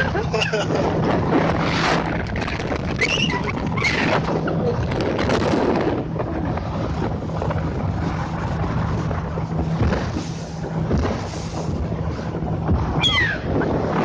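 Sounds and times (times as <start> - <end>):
motorboat engine running: 0.0 - 14.0
wind rushing on microphone: 0.0 - 14.0.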